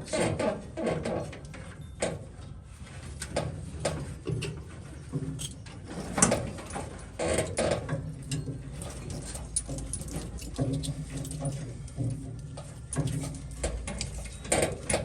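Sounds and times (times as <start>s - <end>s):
clicks and knocks of hand work: 3.1s - 15.0s.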